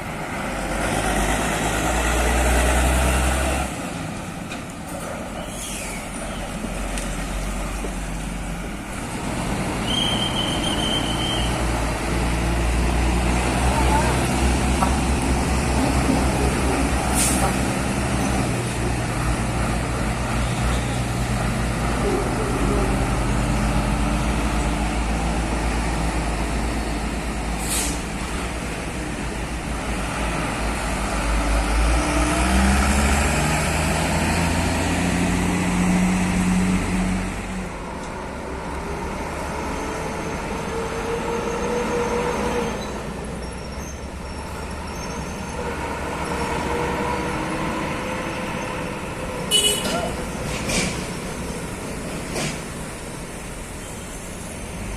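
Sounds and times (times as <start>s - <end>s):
air brake hiss: 5.4s - 6.1s, 17.1s - 17.6s, 27.6s - 28.2s.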